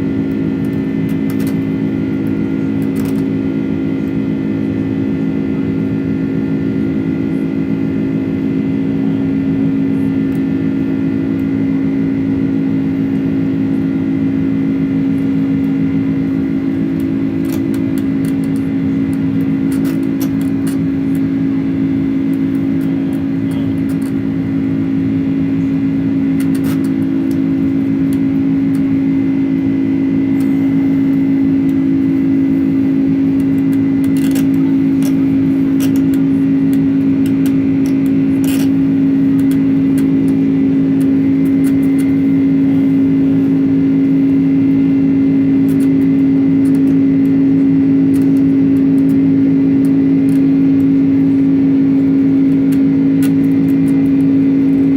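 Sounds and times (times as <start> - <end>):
jet engines droning: 0.0 - 54.9.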